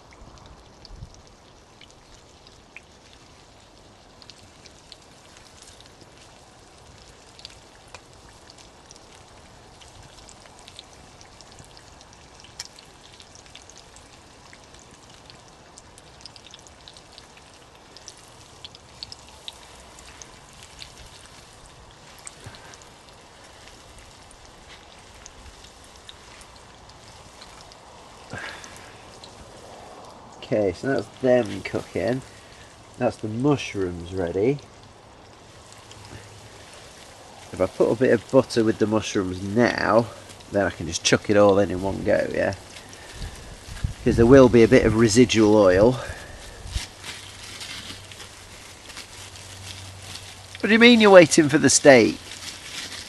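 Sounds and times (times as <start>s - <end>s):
mushrooms sizzling in oil: 0.0s - 53.0s
oil popping and crackling: 0.0s - 53.0s.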